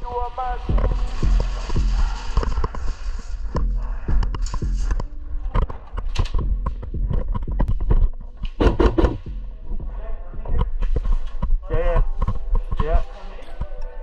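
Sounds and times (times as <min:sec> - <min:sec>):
deep bass line: 0:00.6 - 0:12.8
sharp knocks and clicks: 0:03.6 - 0:09.9.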